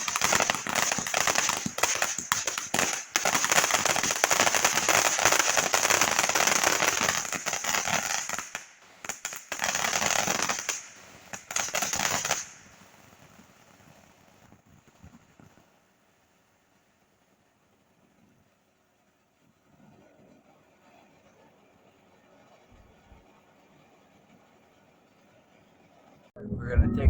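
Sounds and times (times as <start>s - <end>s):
firecrackers crackling: 0.0s - 15.8s.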